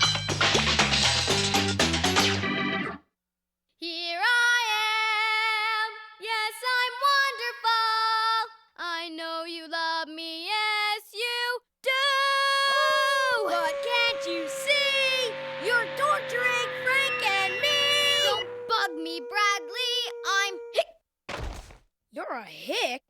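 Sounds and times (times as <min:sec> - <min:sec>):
girl singing unaccompanied: 0:03.8 - 0:20.8.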